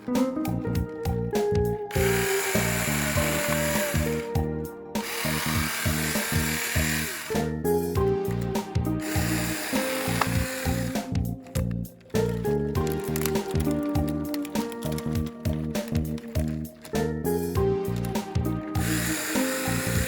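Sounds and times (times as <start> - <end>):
background music: 0.0 - 20.0
chainsaw cutting branch wood: 1.9 - 4.4, 5.0 - 7.6, 9.0 - 11.5, 18.0 - 20.0.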